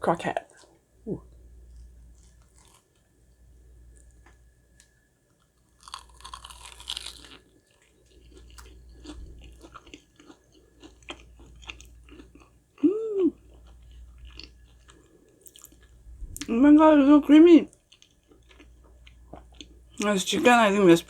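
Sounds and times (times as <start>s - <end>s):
chewing clicks and crackles: 1.8s - 3.1s, 4.0s - 12.6s, 13.4s - 16.0s, 17.7s - 20.1s
biting crispy food crunch: 2.1s - 3.0s, 5.6s - 16.0s, 17.9s - 19.7s
person humming: 12.8s - 13.4s.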